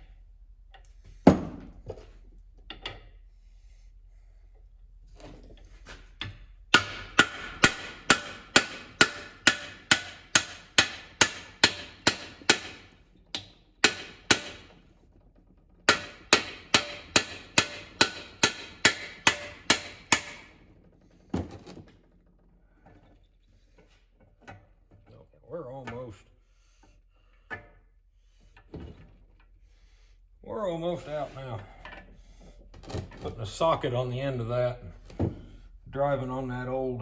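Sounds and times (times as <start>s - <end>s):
dull knock: 1.3s - 1.7s.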